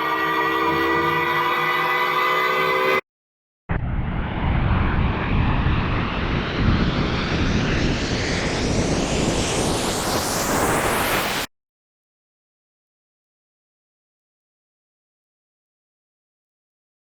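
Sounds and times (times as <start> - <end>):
rumbling noise riser: 3.7 - 11.5.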